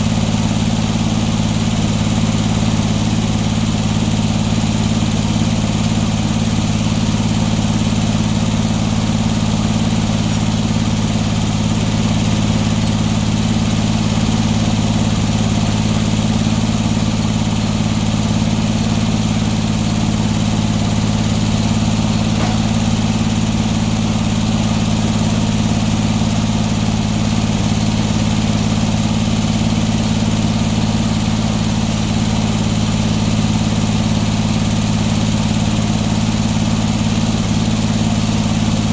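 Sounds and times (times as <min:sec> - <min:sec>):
sawmill engine humming: 0:00.0 - 0:34.8.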